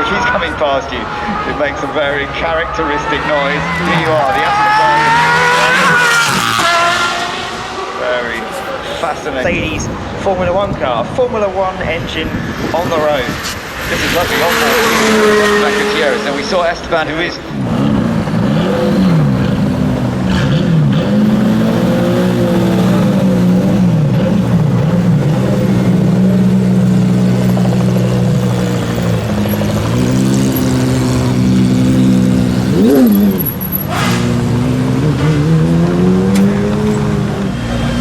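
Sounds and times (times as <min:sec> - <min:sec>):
car engine revving: 0:00.0 - 0:10.1, 0:12.6 - 0:38.0.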